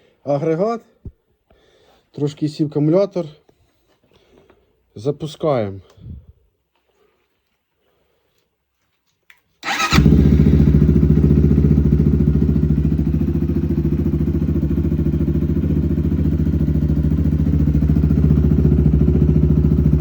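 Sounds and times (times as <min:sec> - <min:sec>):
engine cranking: 0:09.6 - 0:10.6
engine idling: 0:09.6 - 0:20.0.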